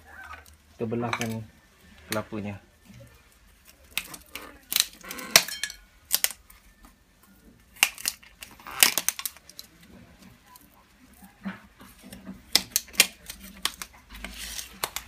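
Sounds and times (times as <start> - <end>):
coconut shell knocks and cracks: 7.8 - 9.5, 12.2 - 14.0.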